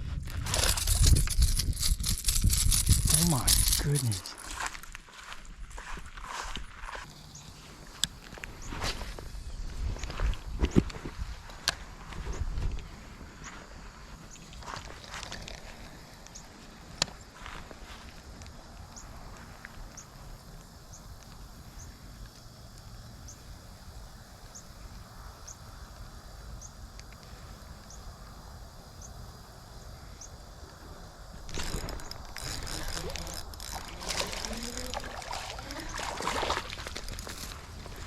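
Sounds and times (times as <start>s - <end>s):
rough noisy commotion: 0.0s - 5.0s, 31.3s - 38.0s.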